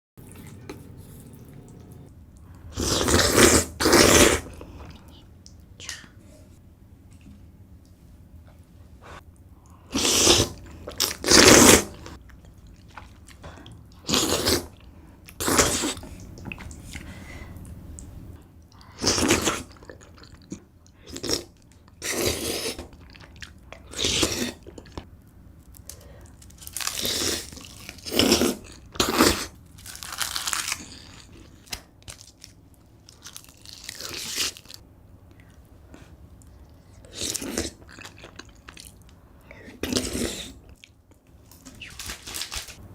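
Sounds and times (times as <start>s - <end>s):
chewing and crunching: 0.2s - 2.1s, 36.4s - 39.2s.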